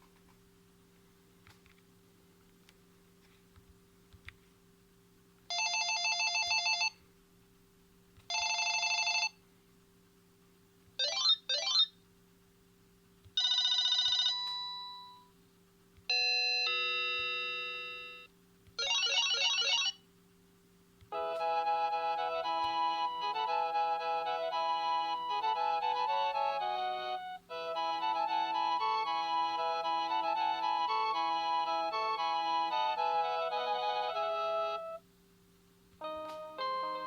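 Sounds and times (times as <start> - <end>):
cordless phone ringtones: 8.3 - 9.4, 13.4 - 15.2, 16.1 - 20.0.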